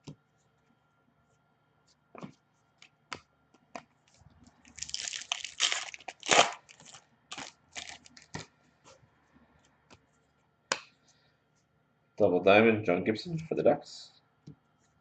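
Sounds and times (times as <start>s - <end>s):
wrapper crinkling: 4.6s - 8.4s.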